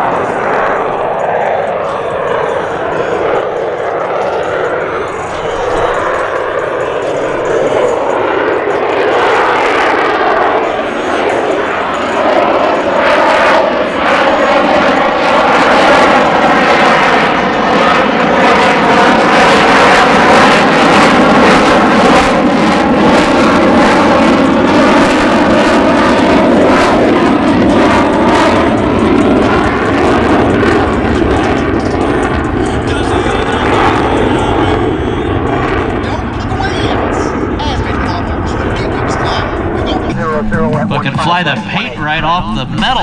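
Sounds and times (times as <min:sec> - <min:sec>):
propeller aircraft engine: 0:00.0 - 0:43.0.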